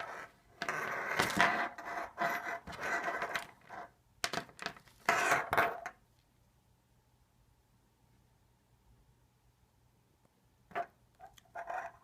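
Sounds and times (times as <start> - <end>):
cables scraping and rubbing: 0.0 - 3.9, 11.2 - 12.0.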